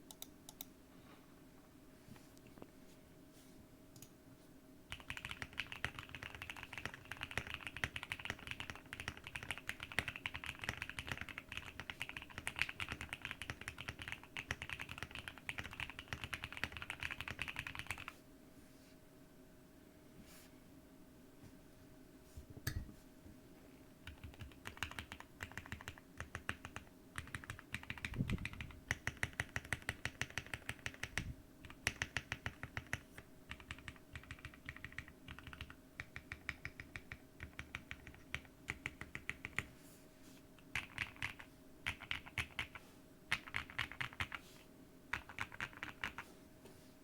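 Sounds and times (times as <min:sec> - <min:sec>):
faint steady hum: 0:00.0 - 0:47.0
mechanical keyboard typing: 0:04.9 - 0:18.1, 0:24.0 - 0:39.7, 0:40.7 - 0:44.4, 0:45.1 - 0:46.2.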